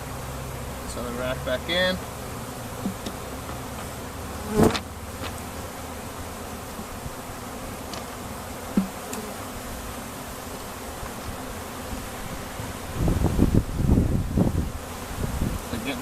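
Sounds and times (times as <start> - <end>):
honeybees buzzing: 0.0 - 16.0.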